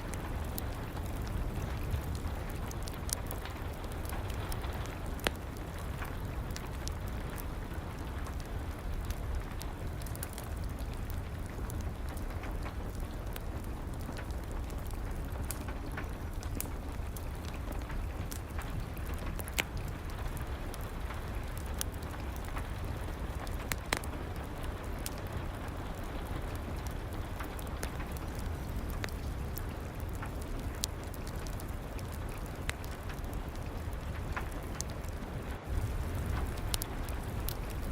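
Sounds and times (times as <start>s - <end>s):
fireplace fire crackling: 0.0s - 37.9s
rain hissing: 33.8s - 37.9s.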